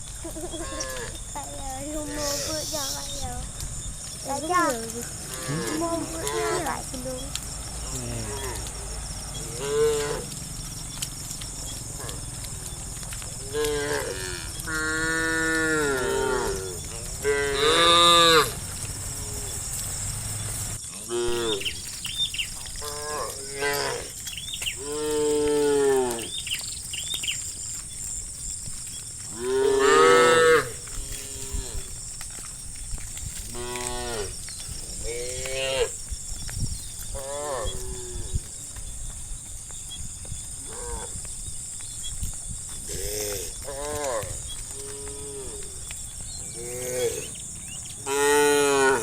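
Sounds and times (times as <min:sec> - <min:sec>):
cattle mooing: 0:13.4 - 0:18.6, 0:21.1 - 0:27.6, 0:28.9 - 0:32.0, 0:33.4 - 0:34.3, 0:48.0 - 0:49.0.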